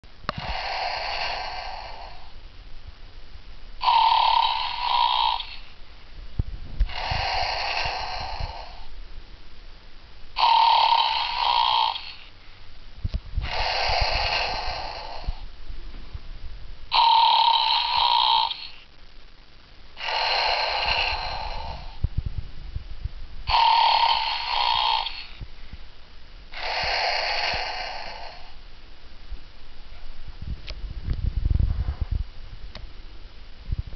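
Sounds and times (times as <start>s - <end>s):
person snoring: 0.4s - 2.4s, 3.8s - 5.7s, 6.9s - 8.9s, 10.4s - 12.3s, 13.4s - 15.4s, 16.9s - 18.8s, 20.0s - 22.0s, 23.5s - 25.4s, 26.5s - 28.6s.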